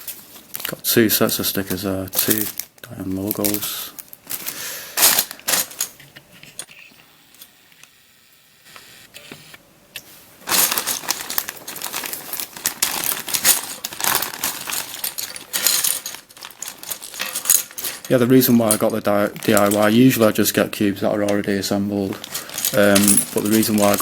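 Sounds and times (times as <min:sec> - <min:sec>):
loose plastic pieces clattering: 0:00.0 - 0:06.7, 0:10.4 - 0:24.0
plastic parts clicking: 0:10.5 - 0:20.0, 0:22.1 - 0:24.0.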